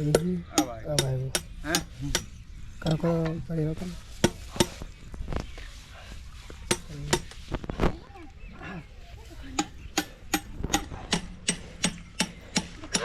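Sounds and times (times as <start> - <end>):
sharp knocks and clicks: 6.7 - 7.4, 9.6 - 13.0
person speaking: 6.7 - 9.8.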